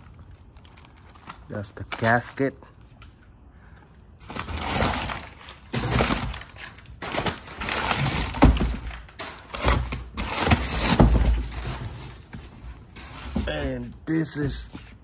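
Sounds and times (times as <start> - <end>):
packing material crackling: 0.0 - 2.4, 4.2 - 11.0.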